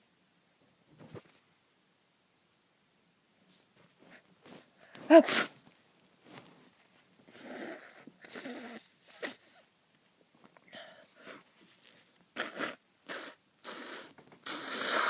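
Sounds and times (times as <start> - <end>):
person sniffing: 4.8 - 5.6, 10.7 - 15.0
person sneezing: 5.0 - 5.6.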